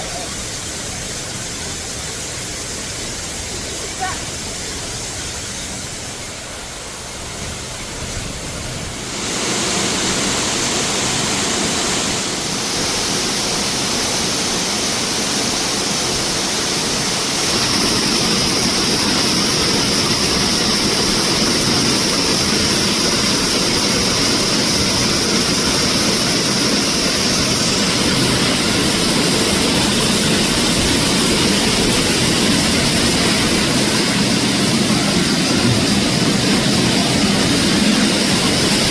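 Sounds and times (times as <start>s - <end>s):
waterfall pouring: 0.0s - 38.9s.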